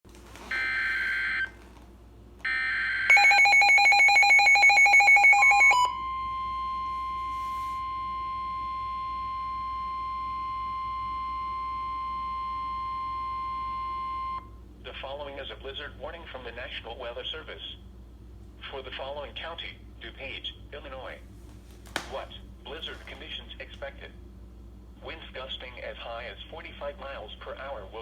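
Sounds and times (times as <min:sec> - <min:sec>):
long steady alarm tone: 0:00.4 - 0:01.6, 0:02.4 - 0:14.6
two-pitch alarm: 0:00.5 - 0:01.5, 0:02.4 - 0:14.6.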